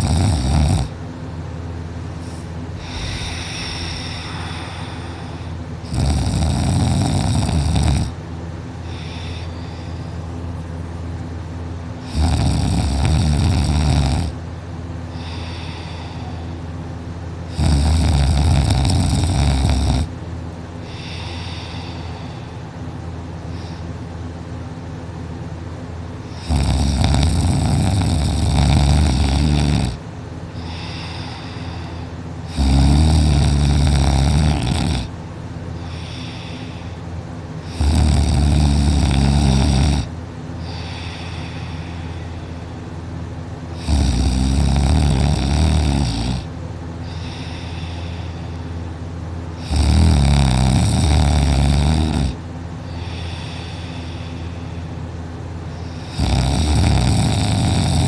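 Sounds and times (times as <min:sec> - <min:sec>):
person snoring loudly: 0:00.0 - 0:01.0, 0:02.8 - 0:08.2, 0:12.0 - 0:14.4, 0:17.5 - 0:20.1, 0:26.3 - 0:30.0, 0:30.6 - 0:35.1, 0:35.8 - 0:37.0, 0:37.6 - 0:42.6, 0:43.7 - 0:48.6, 0:49.6 - 0:54.8, 0:55.8 - 0:58.0
quiet breathing: 0:02.1 - 0:06.9, 0:07.6 - 0:11.0, 0:15.0 - 0:17.9, 0:20.0 - 0:24.4, 0:28.0 - 0:33.4, 0:34.4 - 0:38.9, 0:40.0 - 0:44.0, 0:45.8 - 0:49.8, 0:52.3 - 0:58.0.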